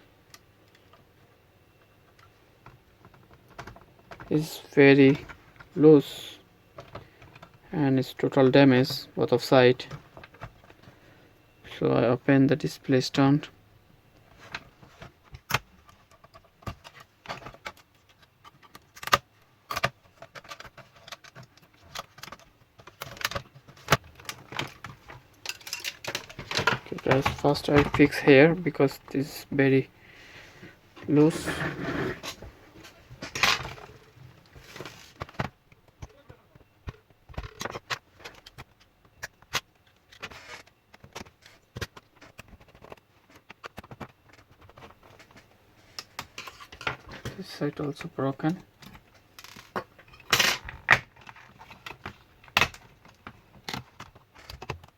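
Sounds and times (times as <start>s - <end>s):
short scraping rub: 31.2s - 32.4s.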